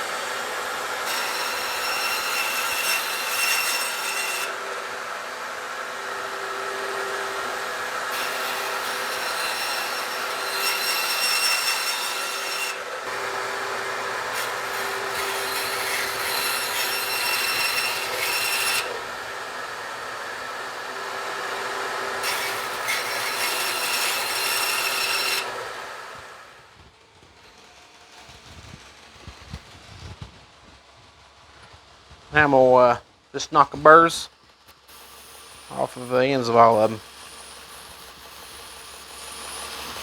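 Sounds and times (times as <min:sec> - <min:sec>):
power cutting tool cutting: 0:00.0 - 0:26.6, 0:34.7 - 0:40.0.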